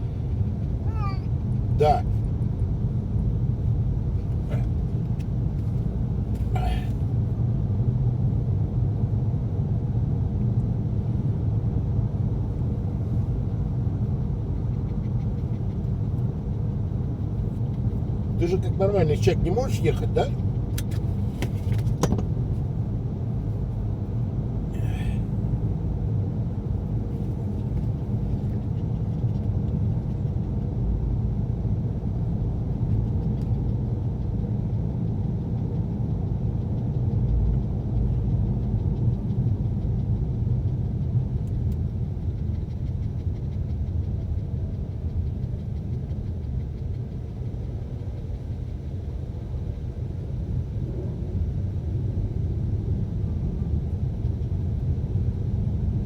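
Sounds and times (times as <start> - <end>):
car cabin road and engine rumble: 0.0 - 56.0.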